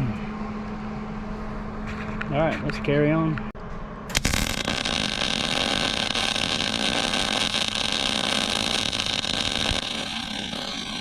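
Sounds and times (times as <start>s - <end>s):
welder arc crackling: 4.1s - 11.0s.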